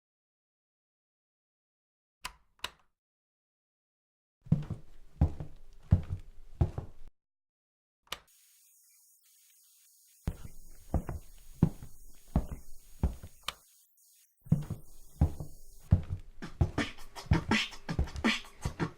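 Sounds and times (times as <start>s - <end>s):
sharp click: 8.1s - 8.3s.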